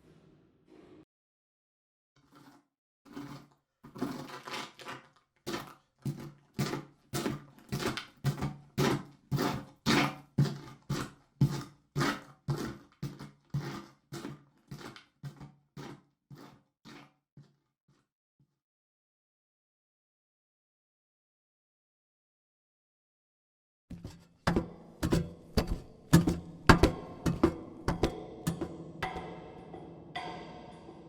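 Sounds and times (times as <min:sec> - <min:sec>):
footsteps walking: 0:23.9 - 0:29.3.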